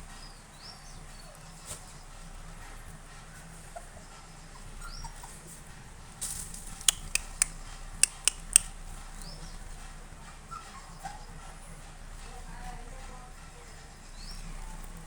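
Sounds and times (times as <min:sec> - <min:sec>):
sharp ringing clicks: 0:06.8 - 0:08.7.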